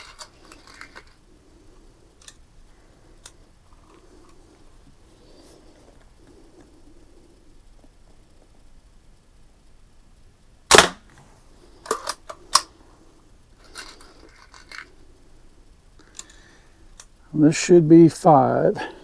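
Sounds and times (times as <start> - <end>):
soft rattles: 0.0 - 7.1, 11.2 - 15.3
bb gun firing: 10.7 - 11.2.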